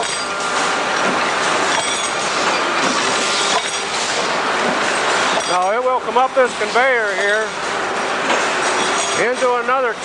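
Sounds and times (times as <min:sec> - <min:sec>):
punch press clatter: 0:00.0 - 0:05.7.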